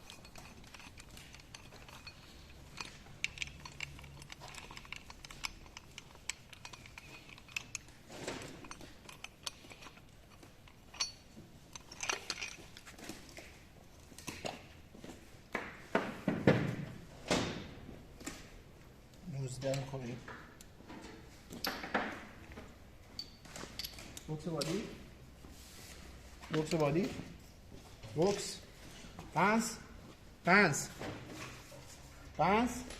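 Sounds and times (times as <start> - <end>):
metal parts clunking: 0.0 - 14.7, 23.1 - 25.0
metal tools and parts clinking: 0.0 - 14.7, 21.1 - 25.4, 26.4 - 29.9.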